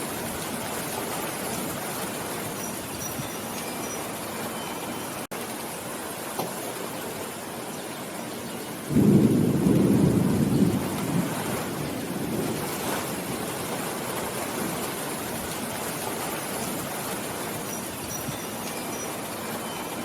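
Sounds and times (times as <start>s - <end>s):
steady rain: 0.0s - 20.0s
thunder rumbling: 8.8s - 17.6s.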